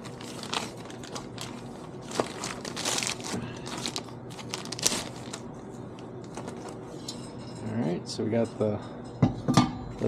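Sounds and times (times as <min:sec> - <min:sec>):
packaging wrap crinkling: 0:00.0 - 0:06.8.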